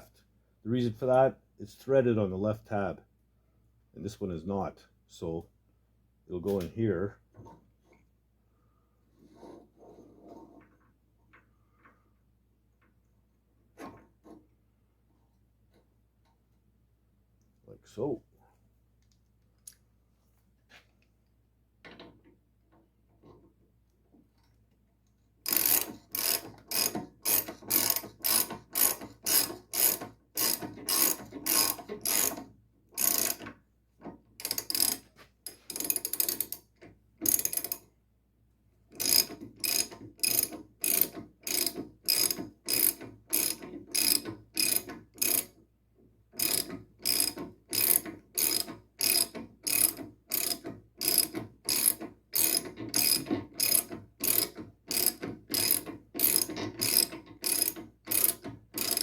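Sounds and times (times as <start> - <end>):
ratchet wrench clicking: 25.5 - 32.4, 33.0 - 33.4, 34.4 - 36.6, 37.2 - 37.8, 39.0 - 45.5, 46.4 - 59.0.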